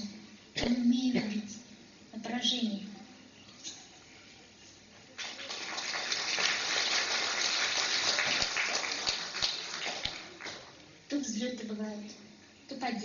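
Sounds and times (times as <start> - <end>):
audience applauding: 5.2 - 10.7.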